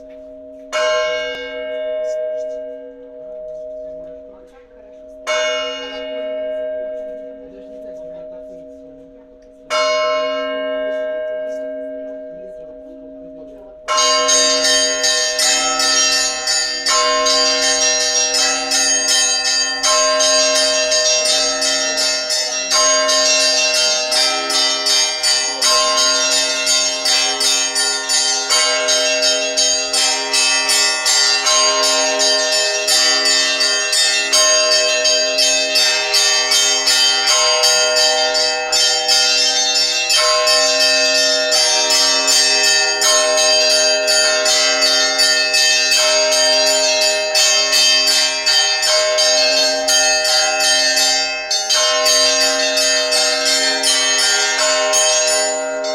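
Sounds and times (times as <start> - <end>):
church bells ringing: 0.0 - 55.9.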